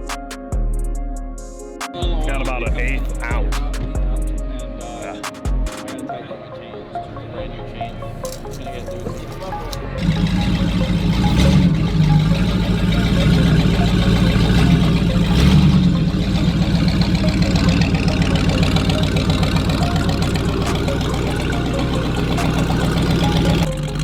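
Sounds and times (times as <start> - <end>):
hot rod engine idling: 8.2 - 24.0.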